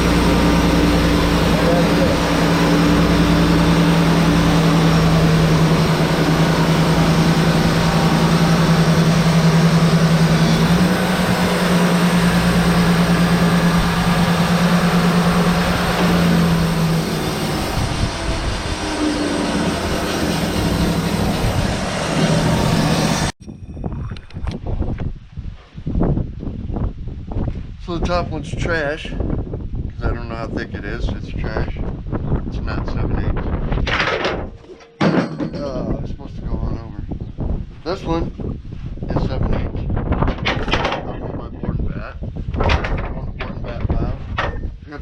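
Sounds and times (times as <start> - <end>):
band saw cutting wood: 0.0 - 23.4
sawmill engine droning: 0.0 - 23.4.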